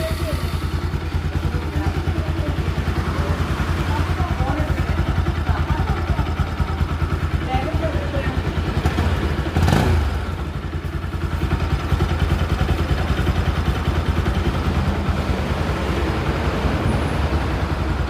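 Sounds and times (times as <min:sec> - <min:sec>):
motorcycle engine idling: 0:00.0 - 0:18.0.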